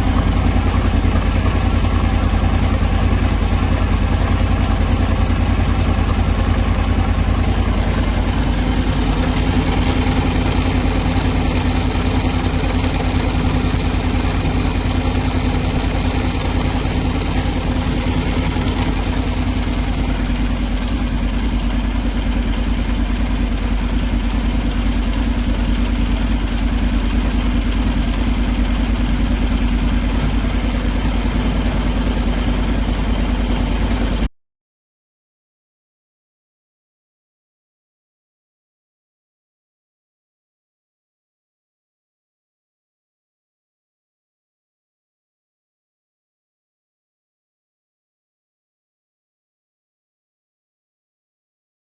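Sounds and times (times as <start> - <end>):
motorcycle engine running: 0.0 - 34.3.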